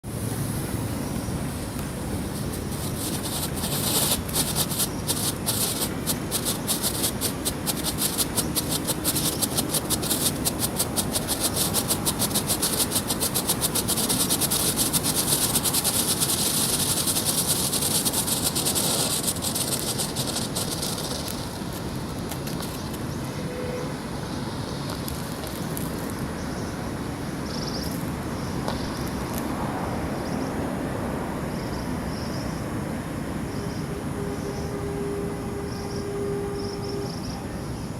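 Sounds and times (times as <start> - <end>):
outdoor background: 0.0 - 37.9
firework hissing and crackling: 0.1 - 23.2, 24.2 - 26.7.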